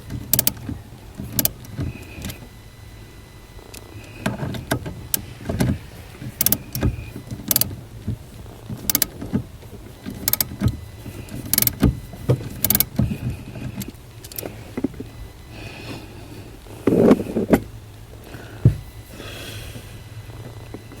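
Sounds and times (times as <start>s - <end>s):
mechanical clunks and clicks: 0.0s - 2.6s, 3.6s - 15.2s.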